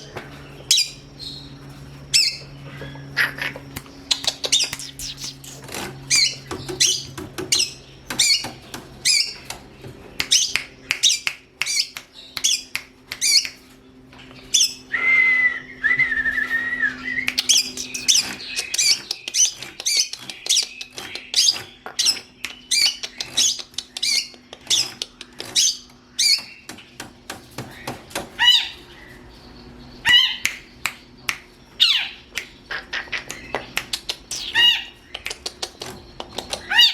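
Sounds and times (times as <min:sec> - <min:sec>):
shrike calling: 0:00.0 - 0:09.5, 0:10.2 - 0:26.7.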